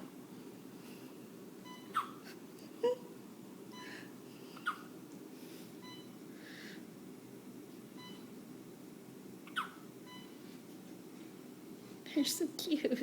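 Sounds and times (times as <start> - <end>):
steady low hum: 0.0 - 13.0
baby hiccuping: 1.9 - 2.2, 9.5 - 9.8.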